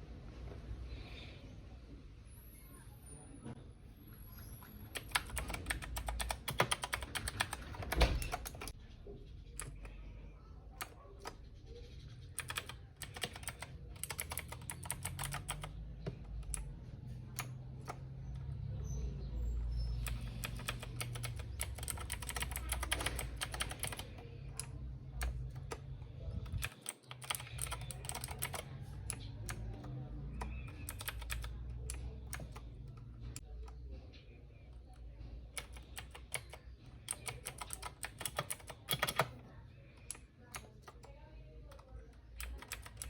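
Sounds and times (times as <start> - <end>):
typing on clicky keyboard: 4.7 - 8.8, 9.5 - 19.0, 19.7 - 43.0.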